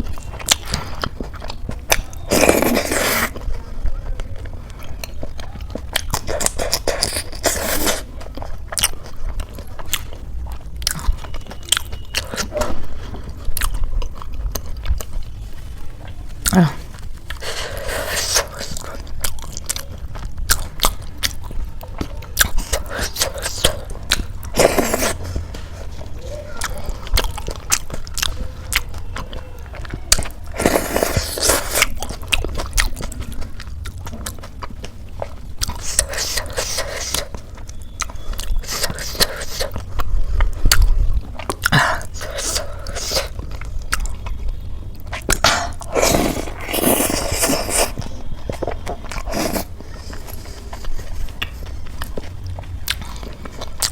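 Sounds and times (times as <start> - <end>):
chewing and crunching food: 0.0 - 53.9
mouth clicks: 35.6 - 53.9.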